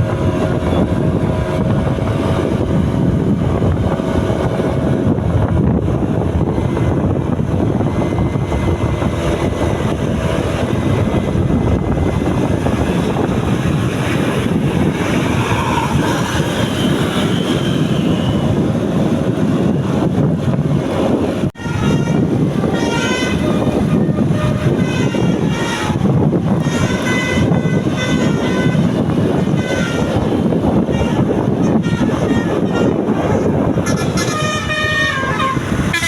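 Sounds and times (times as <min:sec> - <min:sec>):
road traffic and engines: 0:00.0 - 0:36.0
wind on microphone: 0:00.0 - 0:36.0.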